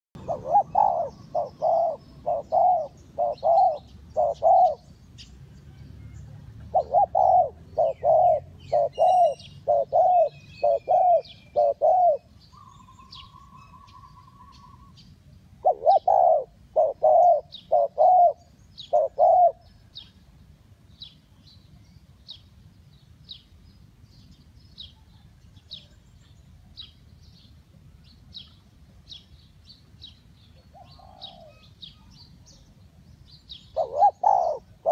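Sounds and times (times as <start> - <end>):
dove cooing: 0.2 - 5.0, 6.5 - 15.0, 15.6 - 19.8, 30.7 - 32.1, 33.7 - 34.9
small birds chirping: 0.2 - 34.9.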